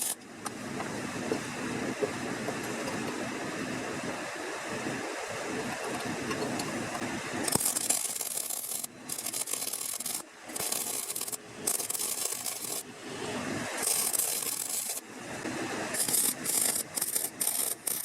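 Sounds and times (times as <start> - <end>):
hard rubbing strokes: 7.5 - 12.8, 13.8 - 15.0, 15.9 - 18.0.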